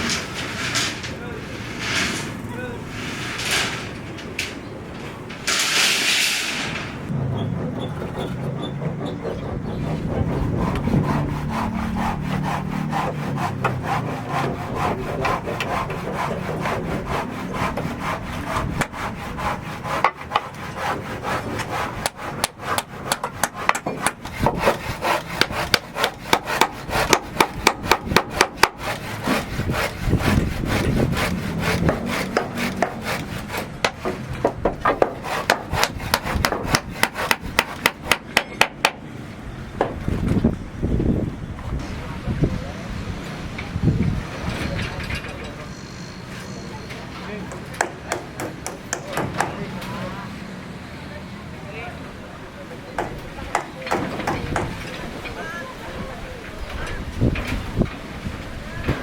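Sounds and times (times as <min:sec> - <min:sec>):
rasping saw strokes: 0:05.5 - 0:38.9, 0:47.5 - 0:49.7.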